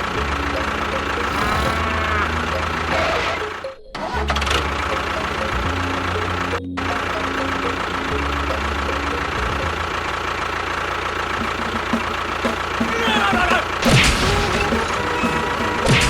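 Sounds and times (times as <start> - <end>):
engine idling with fast knock: 0.0 - 1.6, 4.3 - 16.0
gliding tones: 0.0 - 6.0.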